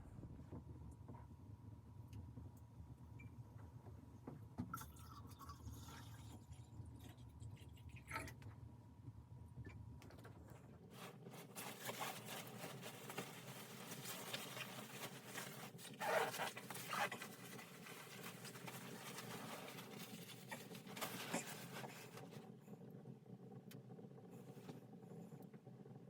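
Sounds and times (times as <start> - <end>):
rustling and scuffing handling: 10.9 - 22.4.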